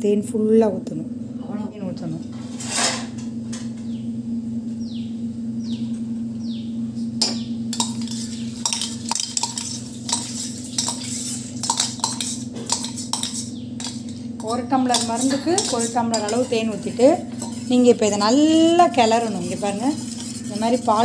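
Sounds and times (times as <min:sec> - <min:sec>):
steady low hum: 0:00.0 - 0:21.0
spoon clinking against a pan: 0:07.2 - 0:21.0.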